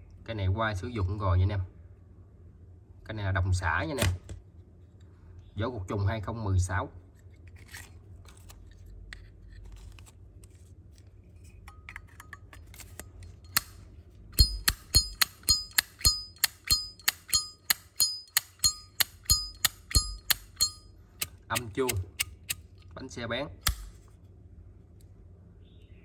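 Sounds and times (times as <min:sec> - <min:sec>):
lighter lid clinking open and shut: 0:11.7 - 0:13.8.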